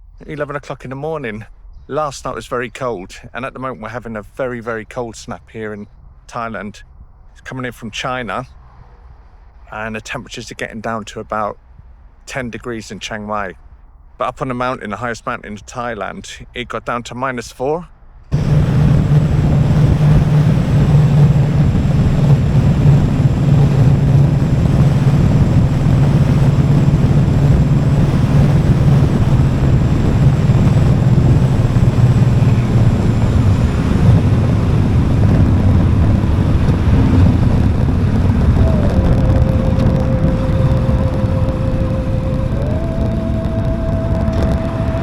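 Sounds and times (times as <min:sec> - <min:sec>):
wind and road noise: 0:00.0 - 0:45.0
motorcycle engine hum: 0:18.3 - 0:45.0
thin high tone: 0:38.6 - 0:45.0.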